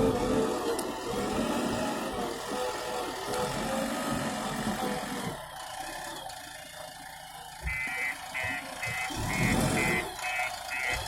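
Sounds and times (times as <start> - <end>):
heavy diesel engine running: 0.0 - 11.0
reversing alarm beeping: 7.6 - 11.0.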